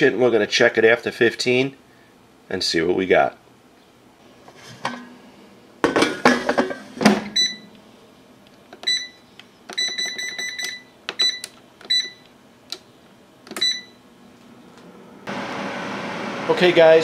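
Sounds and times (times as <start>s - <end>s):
air fryer control panel beeping: 7.1s - 7.8s, 8.8s - 12.3s, 13.5s - 14.0s.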